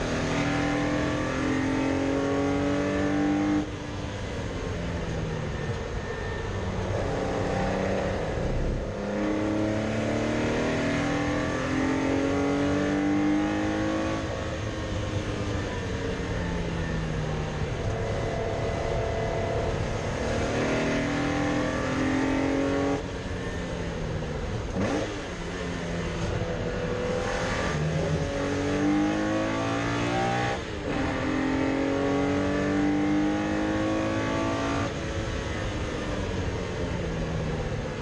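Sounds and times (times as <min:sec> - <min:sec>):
race car engine revving: 0:05.6 - 0:15.7, 0:17.5 - 0:23.0, 0:24.6 - 0:35.6.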